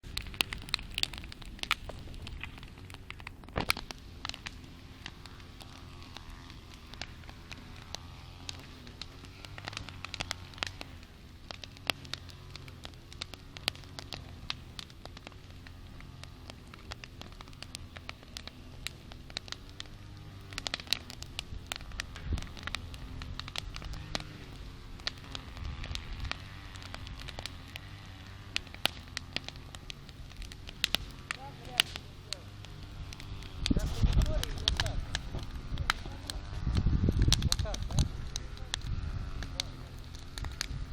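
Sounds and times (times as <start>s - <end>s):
campfire crackling and popping: 0.0s - 40.9s.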